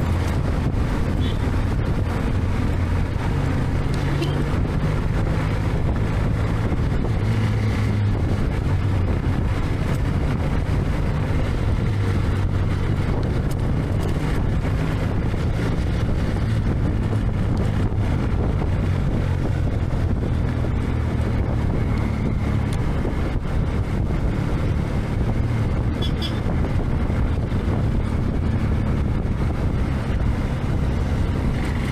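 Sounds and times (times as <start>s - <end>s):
motorcycle engine running: 0.0s - 31.9s
wind noise on microphone: 0.0s - 31.9s.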